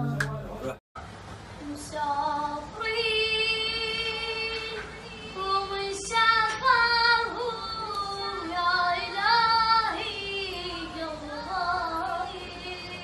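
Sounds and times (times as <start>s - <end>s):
girl singing long held notes: 1.6s - 13.0s.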